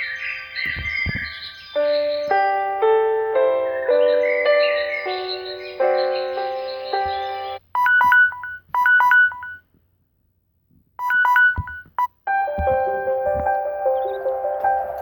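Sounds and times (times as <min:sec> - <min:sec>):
piano-like ringtone melody: 0:00.7 - 0:09.6, 0:11.0 - 0:15.0
melodic ringtone: 0:01.8 - 0:09.6, 0:11.0 - 0:15.0
quick electronic beeps: 0:07.8 - 0:09.6, 0:11.0 - 0:12.2.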